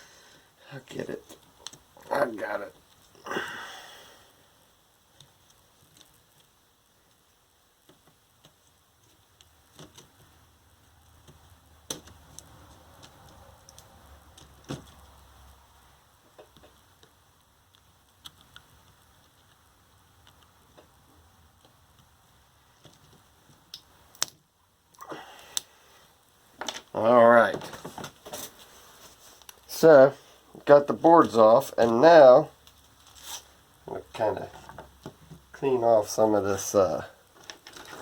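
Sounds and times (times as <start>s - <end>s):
small clicks and taps: 1.3s - 1.9s, 11.0s - 15.6s, 16.3s - 21.0s.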